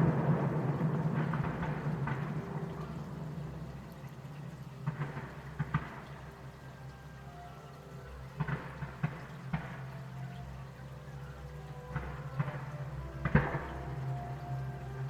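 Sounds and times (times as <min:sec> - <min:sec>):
distant fireworks bangs: 0:00.0 - 0:03.8.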